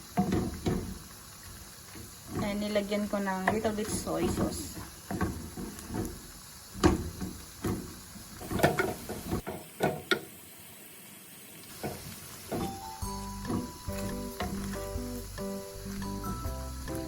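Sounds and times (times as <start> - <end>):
meat sizzling in a pan: 0.0 - 17.0
spatula scraping a pan: 2.2 - 9.4
background music: 12.6 - 17.0.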